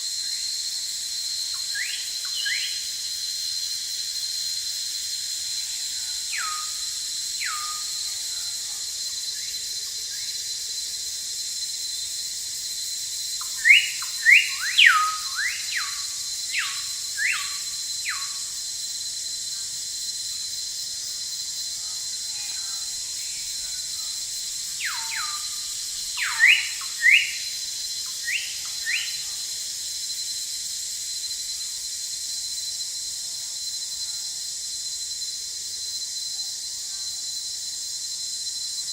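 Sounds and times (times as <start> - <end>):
insect drone: 0.0 - 38.9
bird whistling calls: 13.6 - 16.0, 24.8 - 25.6, 26.2 - 27.5, 28.2 - 29.2.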